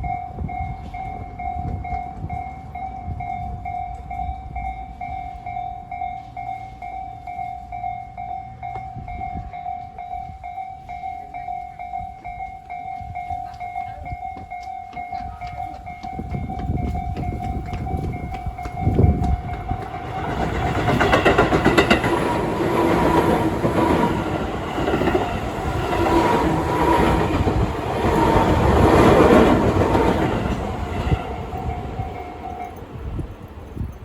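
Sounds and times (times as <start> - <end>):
level crossing warning bell: 0.0 - 34.0
train wheels clattering: 13.4 - 33.6.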